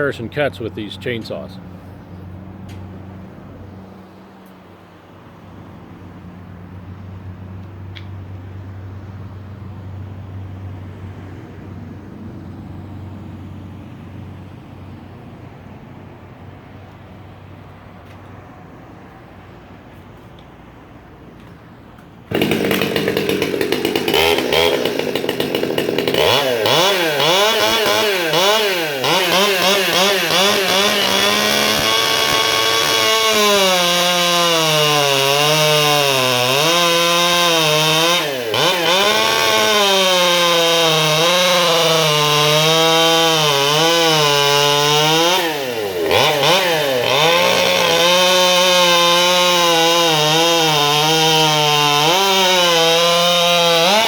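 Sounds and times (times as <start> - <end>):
chainsaw cutting through log: 22.3 - 54.0.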